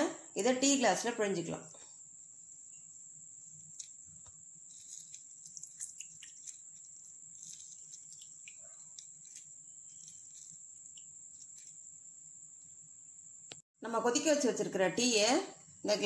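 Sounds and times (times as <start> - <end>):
small clicks and drips: 3.7 - 11.8.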